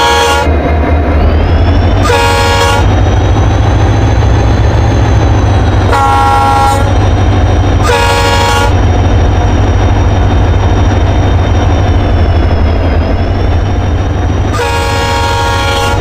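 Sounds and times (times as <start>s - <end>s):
train horn blasts: 0.0s - 0.5s, 2.0s - 3.0s, 5.9s - 7.0s, 7.8s - 8.8s, 14.5s - 16.0s
train rumbling: 0.0s - 16.0s.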